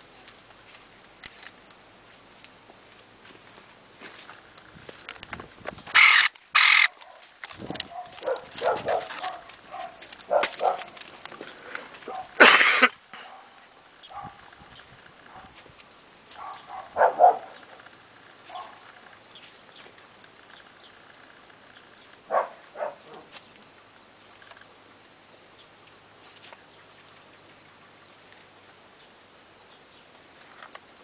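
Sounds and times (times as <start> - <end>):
electric pruning shears cutting: 5.9 - 6.9.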